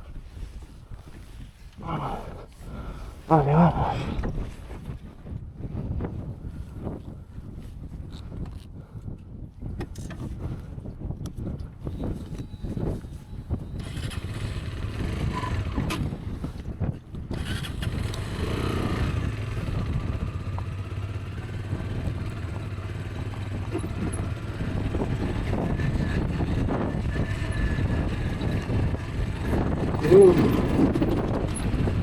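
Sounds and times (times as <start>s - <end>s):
motorcycle engine running: 12.0s - 32.0s.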